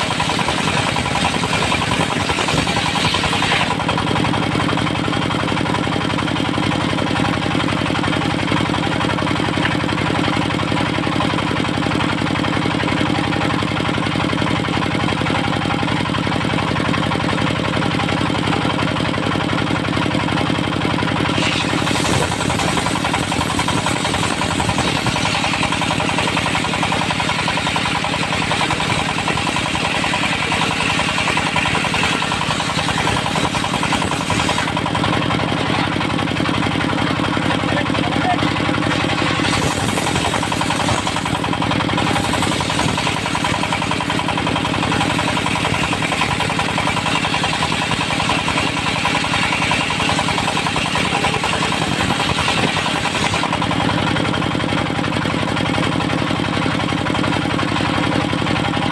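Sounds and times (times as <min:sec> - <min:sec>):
saw blade cutting wood: 0:00.0 - 0:11.9, 0:21.2 - 0:36.9, 0:37.5 - 0:54.8
sawmill engine running: 0:00.0 - 0:58.9.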